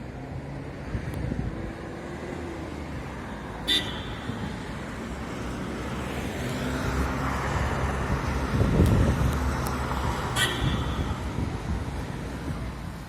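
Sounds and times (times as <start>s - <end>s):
vehicle passing by: 4.3s - 13.0s.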